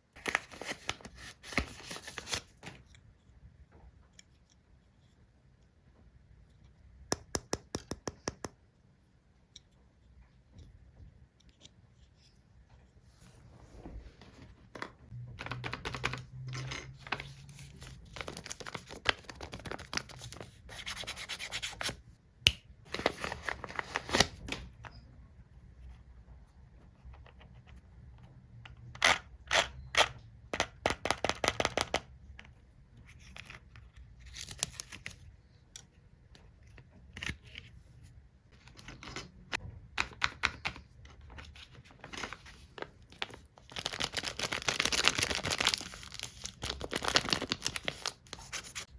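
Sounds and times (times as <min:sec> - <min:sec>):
rubbing and scratching of packaging: 0:00.2 - 0:02.8, 0:40.5 - 0:48.9.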